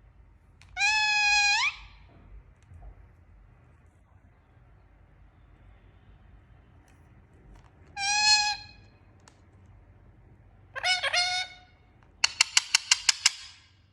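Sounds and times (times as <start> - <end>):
parrot calling: 0.8 - 2.0, 8.0 - 8.8, 10.7 - 13.6.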